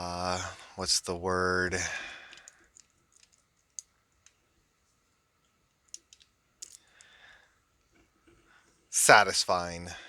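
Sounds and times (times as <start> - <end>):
faint small clicks: 2.3 - 4.4, 5.4 - 7.2.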